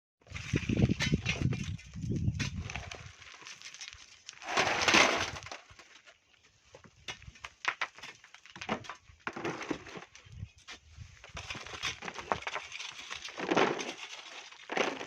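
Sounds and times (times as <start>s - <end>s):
scraping rush of sand and gravel: 0.3s - 5.6s
clicks and knocks of stones: 0.3s - 15.0s.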